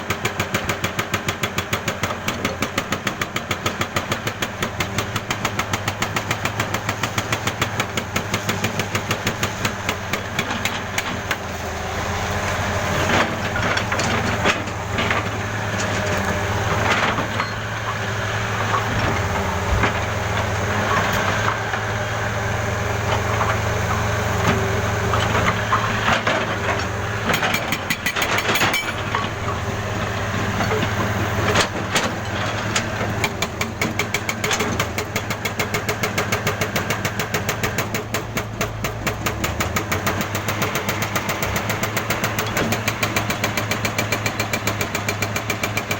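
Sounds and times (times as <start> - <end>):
jackhammer hammering: 0.1 - 11.5, 25.2 - 32.1, 32.7 - 45.9
engine hum: 0.1 - 45.9.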